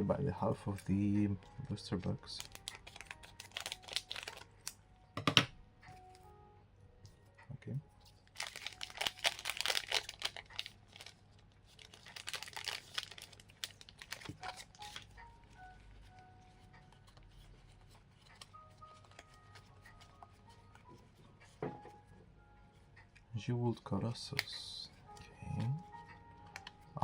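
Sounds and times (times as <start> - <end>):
faint background music: 0.0 - 27.0
wrapper tearing and crinkling: 2.3 - 4.8, 8.2 - 15.2.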